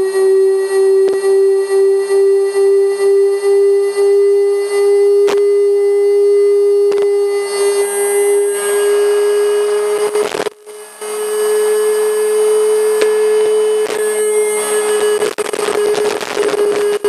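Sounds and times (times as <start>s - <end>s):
steady electrical inverter tone: 0.0s - 17.0s
rough crackling noise: 12.9s - 17.0s.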